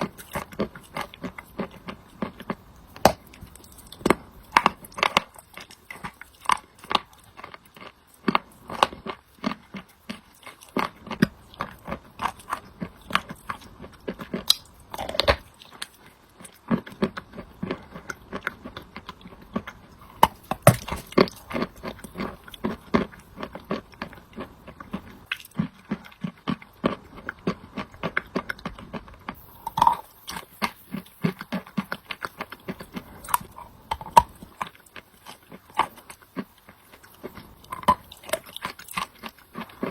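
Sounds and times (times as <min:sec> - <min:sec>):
person crunching chalk: 0:20.1 - 0:25.2.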